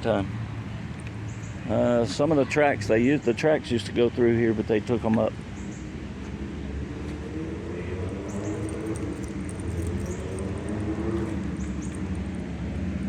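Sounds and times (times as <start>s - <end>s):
vehicle engine hum: 4.4s - 13.0s.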